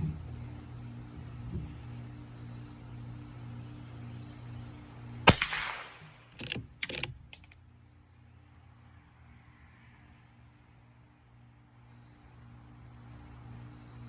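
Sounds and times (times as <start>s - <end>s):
rifle shot: 5.3s - 7.0s
rifle action clacks and clicks: 5.3s - 7.6s.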